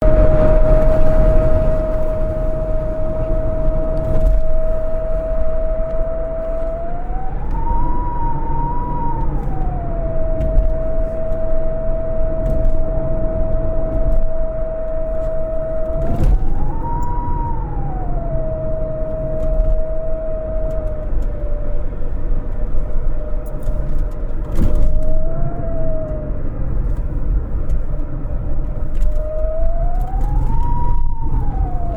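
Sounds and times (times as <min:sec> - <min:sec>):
radio whistling tone: 0:00.0 - 0:22.4, 0:29.0 - 0:31.9.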